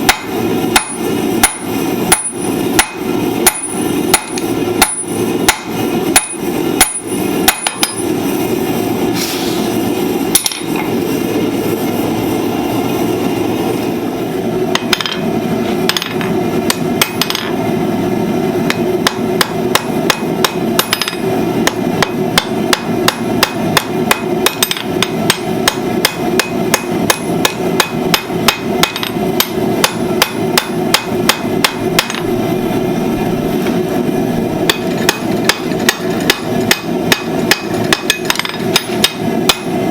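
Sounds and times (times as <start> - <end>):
hammer striking steel on anvil: 0.0 - 8.2, 10.3 - 11.0, 14.7 - 17.6, 18.7 - 32.3, 34.6 - 39.8
steady hum: 0.0 - 39.9.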